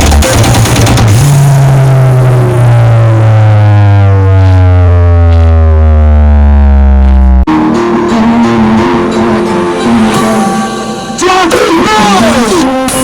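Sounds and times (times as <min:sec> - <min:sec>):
deep synth bass sliding down: 0:00.0 - 0:10.9
music: 0:07.5 - 0:13.0.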